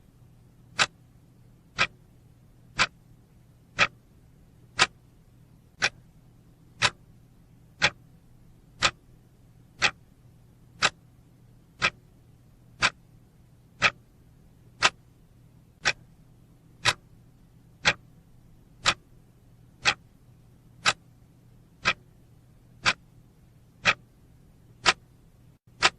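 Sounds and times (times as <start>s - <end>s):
faint low hum: 0.0s - 25.9s
clock ticking: 0.7s - 1.0s, 1.7s - 2.0s, 2.7s - 3.0s, 3.8s - 4.0s, 4.7s - 5.0s, 5.7s - 6.1s, 6.8s - 7.0s, 7.8s - 8.0s, 8.8s - 9.1s, 9.8s - 10.0s, 10.8s - 11.0s, 11.8s - 12.0s, 12.8s - 13.0s, 13.8s - 14.1s, 14.8s - 15.2s, 15.8s - 16.2s, 16.8s - 17.1s, 17.7s - 18.1s, 18.8s - 19.1s, 19.8s - 20.1s, 20.8s - 21.0s, 21.8s - 22.1s, 22.8s - 23.1s, 23.8s - 24.1s, 24.8s - 25.9s.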